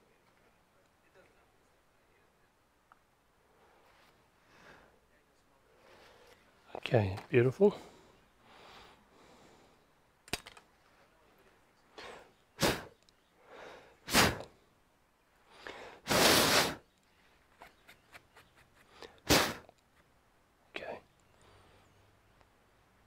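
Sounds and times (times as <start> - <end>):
faint small clicks: 10.2 - 10.7, 13.0 - 13.2
hissing bursts of blown air: 12.6 - 13.0, 14.0 - 14.5, 16.0 - 16.8, 19.2 - 19.7.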